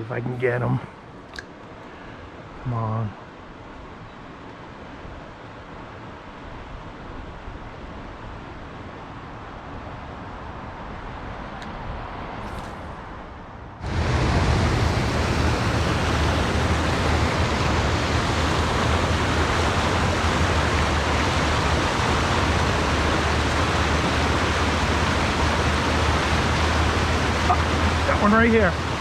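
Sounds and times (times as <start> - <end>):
brook rushing over rocks: 14.0 - 29.0.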